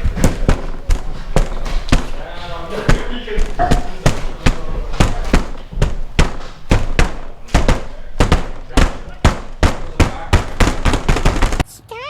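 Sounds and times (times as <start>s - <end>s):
airsoft guns firing: 2.8s - 11.6s.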